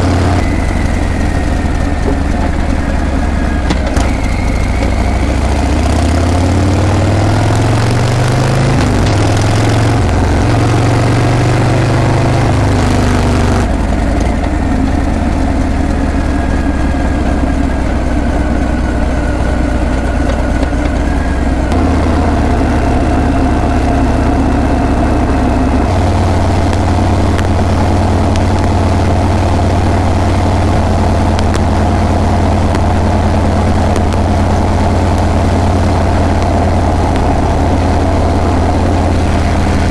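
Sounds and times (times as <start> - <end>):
motorcycle engine and exhaust: 0.0 - 39.9.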